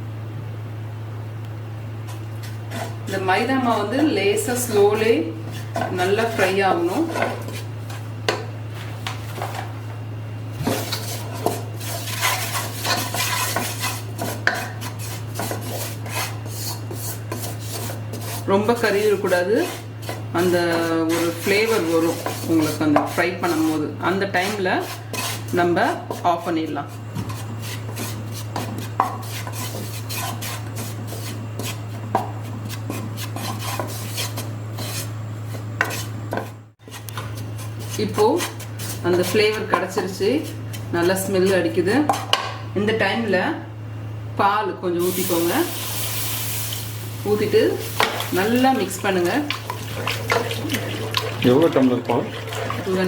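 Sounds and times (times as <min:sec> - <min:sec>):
steady low hum: 0:00.0 - 0:53.0
spoon scraping a pan: 0:02.1 - 0:03.1, 0:04.5 - 0:08.1, 0:10.6 - 0:42.4, 0:47.3 - 0:51.6.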